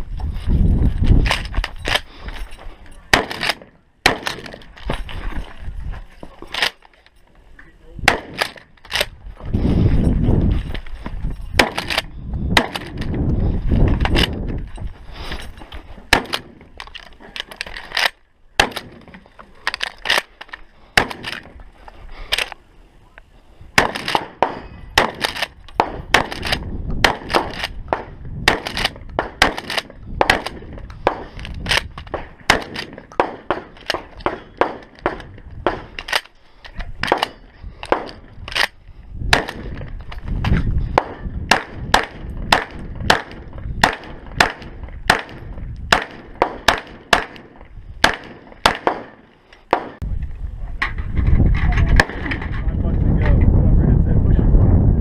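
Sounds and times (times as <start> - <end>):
gunshots: 3.1 - 4.7, 8.0 - 9.1, 11.6 - 13.1, 16.1 - 16.7, 17.9 - 19.1, 21.0 - 21.5, 23.8 - 36.2, 37.0 - 38.7, 39.3 - 39.8, 40.9 - 50.0.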